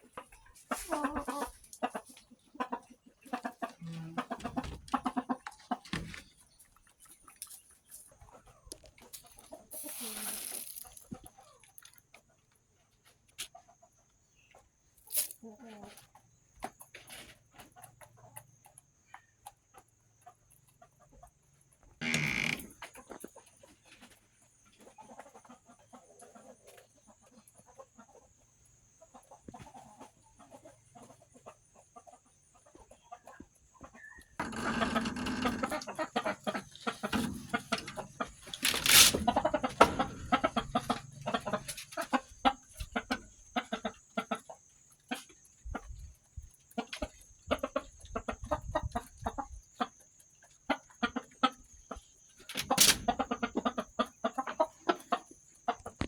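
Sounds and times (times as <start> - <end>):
chickens clucking: 0.0 - 56.0.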